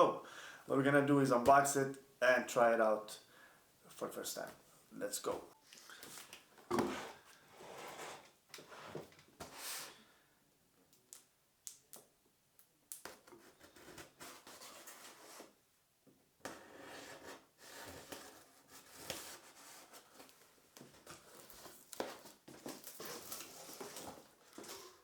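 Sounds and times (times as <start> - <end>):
packaging rustling: 20.2 - 25.0.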